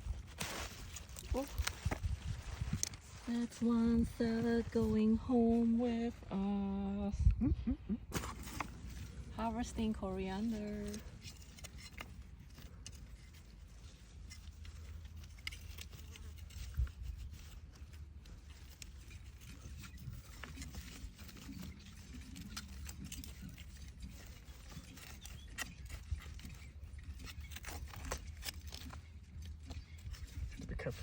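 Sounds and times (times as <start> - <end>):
stems snapping and rustling: 0.0 - 5.8, 8.1 - 31.0
low steady rumble: 0.0 - 24.7.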